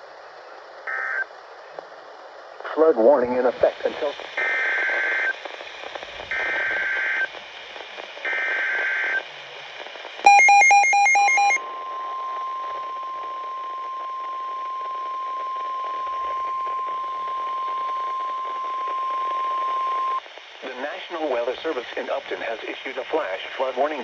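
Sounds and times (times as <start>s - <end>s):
quick beeps: 10.3s - 11.6s
steady alarm tone: 10.3s - 11.6s.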